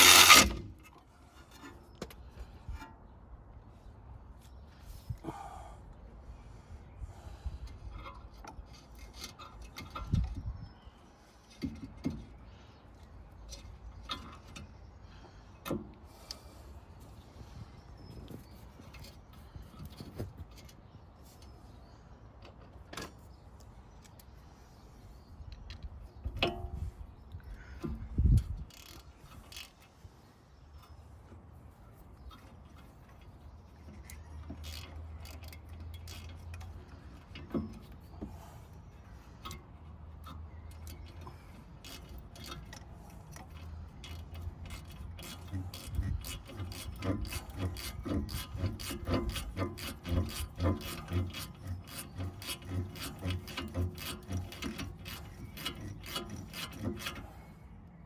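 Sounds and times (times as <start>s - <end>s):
rapid rasping and scraping: 0.0s - 0.8s, 26.5s - 57.7s.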